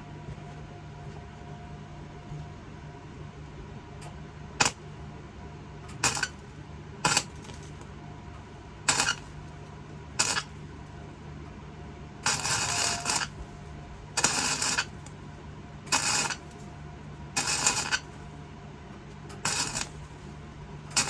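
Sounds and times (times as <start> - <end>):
arc welding crackle bursts: 4.6 - 4.8, 5.9 - 7.8, 8.9 - 9.4, 10.2 - 10.6, 12.2 - 13.5, 14.2 - 15.1, 15.9 - 16.6, 17.4 - 18.2, 19.3 - 20.3.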